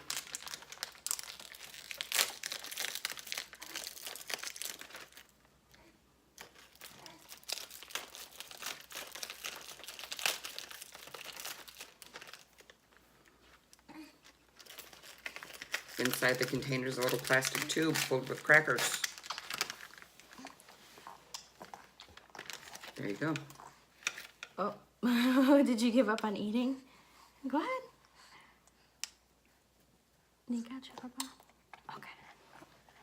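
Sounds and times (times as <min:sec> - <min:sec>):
snack package crinkling: 0:00.0 - 0:05.5, 0:06.4 - 0:20.7, 0:21.3 - 0:24.4.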